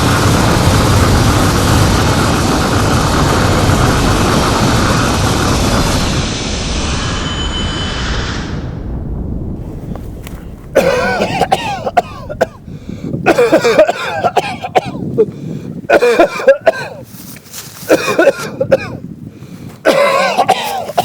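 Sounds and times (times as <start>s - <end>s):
man coughing and hacking: 10.7s - 12.6s, 13.2s - 15.3s, 15.9s - 17.0s, 17.8s - 19.0s, 19.8s - 21.0s.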